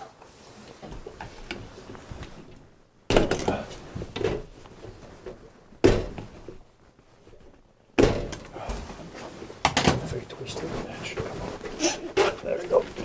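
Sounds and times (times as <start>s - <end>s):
plastic knocks and rattles: 0.8s - 6.6s, 7.4s - 8.8s, 9.6s - 10.1s.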